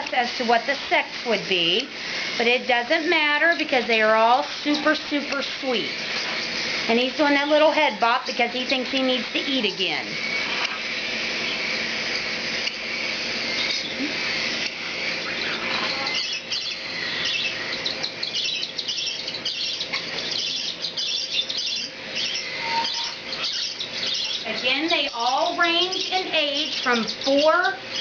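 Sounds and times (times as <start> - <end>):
cockatiels chirping: 0.2 - 11.8, 13.5 - 14.1, 14.9 - 28.0.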